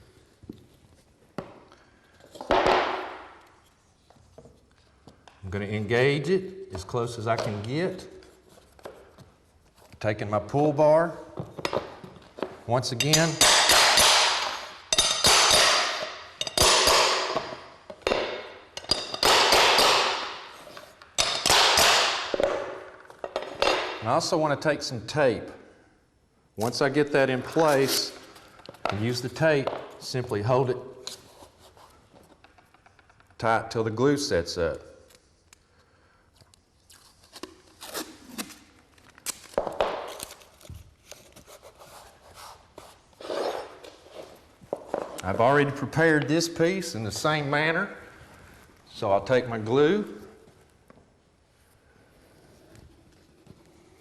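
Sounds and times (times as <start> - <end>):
hammer striking metal bar: 13.0 - 17.5, 21.2 - 22.5
tape pulled and torn off roll: 36.4 - 44.4.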